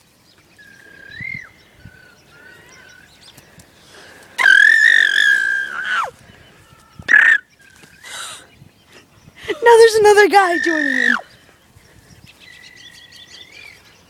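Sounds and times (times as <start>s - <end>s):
faint high wavering calls: 0.5s - 3.4s, 4.4s - 8.5s, 9.6s - 11.6s
person squealing: 4.4s - 6.1s, 10.4s - 11.2s.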